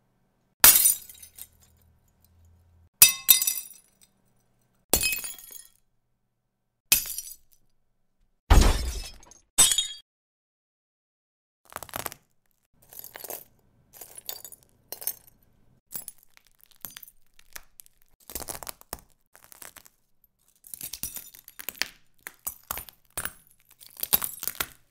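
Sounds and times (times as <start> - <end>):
broken glass crunching and clinking: 0.6 - 1.8, 3.0 - 4.1, 4.9 - 5.8, 12.8 - 24.9.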